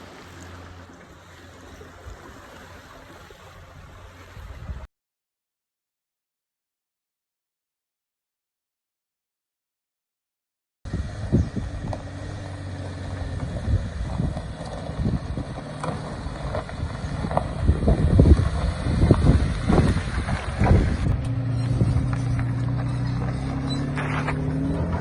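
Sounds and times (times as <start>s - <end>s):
vehicle engine running: 10.9s - 25.0s.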